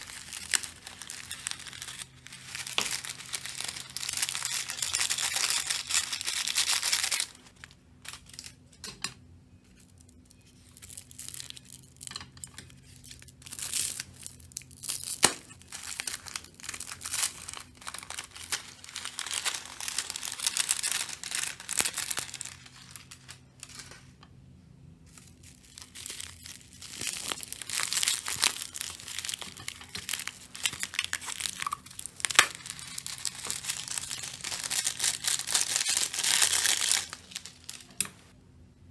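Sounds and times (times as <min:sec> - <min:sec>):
slime crackling and popping: 0:00.0 - 0:07.5, 0:12.8 - 0:23.4, 0:25.2 - 0:38.2.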